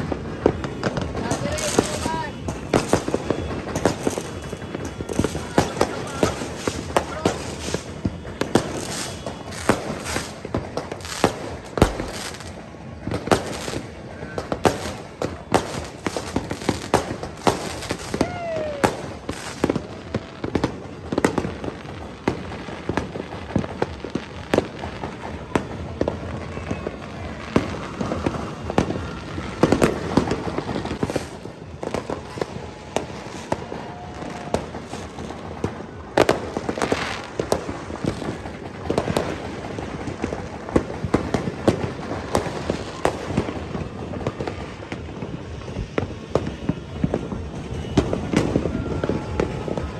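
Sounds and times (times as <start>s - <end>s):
fireworks bangs and pops: 0.0s - 49.9s.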